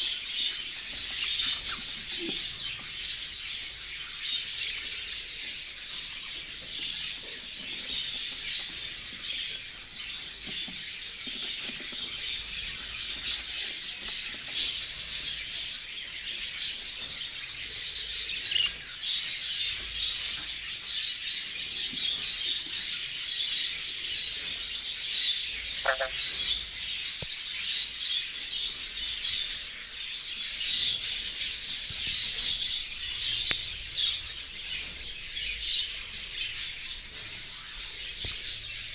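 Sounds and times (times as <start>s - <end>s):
budgerigars chattering: 25.7s - 26.6s.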